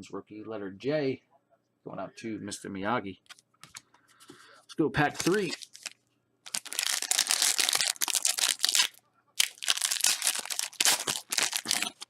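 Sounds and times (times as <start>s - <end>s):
card wrapper crinkling and tearing: 5.1s - 12.0s.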